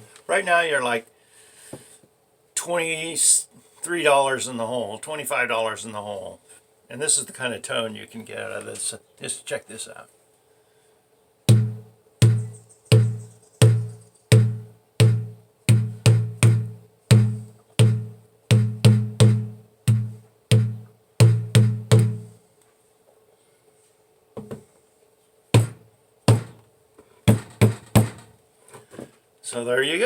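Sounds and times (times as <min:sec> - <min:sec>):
water bottle drum thumps: 0:11.5 - 0:22.4, 0:24.4 - 0:24.6, 0:25.6 - 0:26.7, 0:27.3 - 0:28.3.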